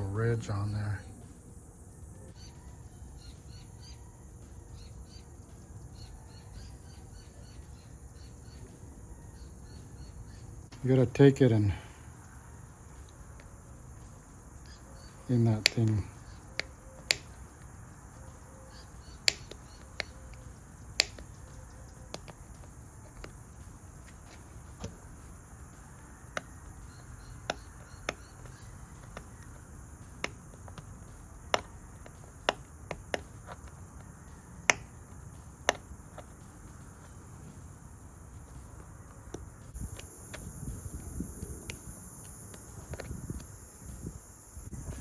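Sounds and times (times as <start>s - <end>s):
small metallic clicks: 14.7s - 17.6s, 18.7s - 22.4s.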